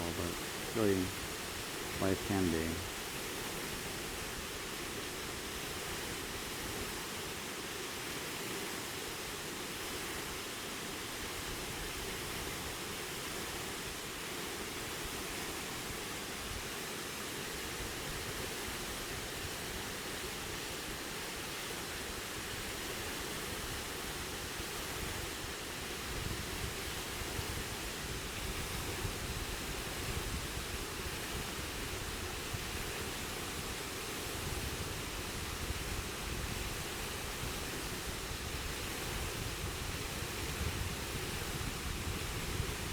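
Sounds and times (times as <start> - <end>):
waterfall rushing: 0.0 - 3.0.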